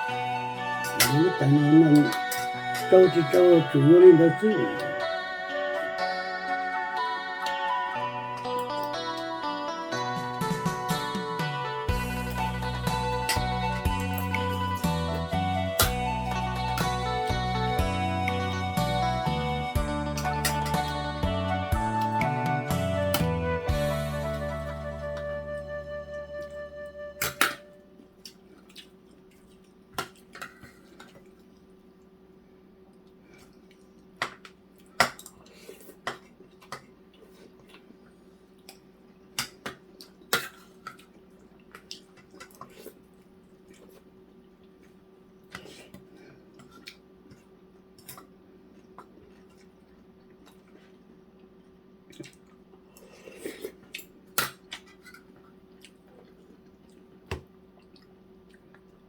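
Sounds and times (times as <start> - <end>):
soft eating sounds: 0.0 - 11.1, 11.9 - 23.1, 27.7 - 59.0
utensils clinking against dishes: 0.8 - 3.3, 20.2 - 21.0.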